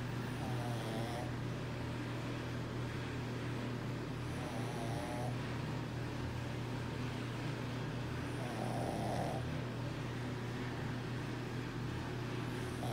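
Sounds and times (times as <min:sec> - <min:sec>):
steady low hum: 0:00.0 - 0:12.9
dog snoring: 0:00.3 - 0:01.4, 0:04.2 - 0:05.5, 0:08.3 - 0:09.6, 0:12.5 - 0:12.9.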